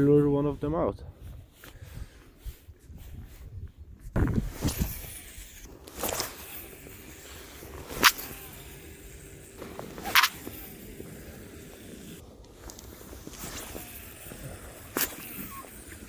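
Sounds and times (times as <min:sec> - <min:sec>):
fishing reel clicks: 0:04.6 - 0:16.0.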